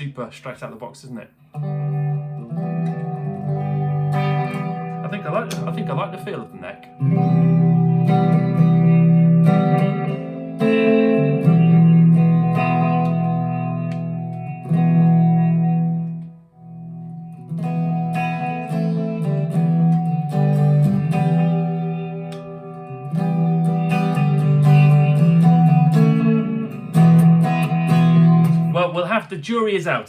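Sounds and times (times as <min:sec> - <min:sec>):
electric guitar through amplifier: 0:01.5 - 0:28.8.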